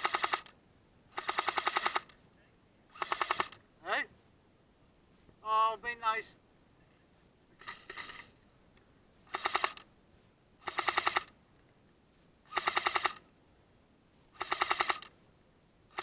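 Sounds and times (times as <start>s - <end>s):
airsoft gun firing bursts: 0.0s - 0.5s, 1.1s - 2.1s, 2.9s - 3.6s, 9.3s - 9.8s, 10.6s - 11.3s, 12.5s - 13.2s, 14.4s - 15.1s.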